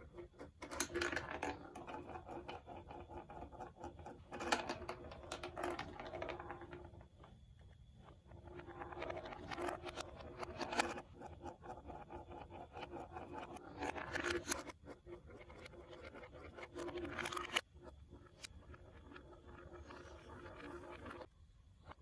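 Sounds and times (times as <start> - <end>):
plastic pieces clicking and scraping: 0.6 - 1.8.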